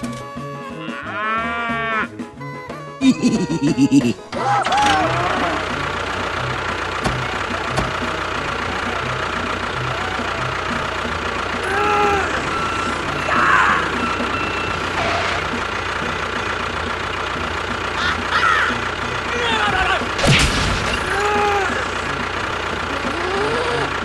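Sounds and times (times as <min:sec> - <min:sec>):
vehicle engine running: 0:02.8 - 0:24.0.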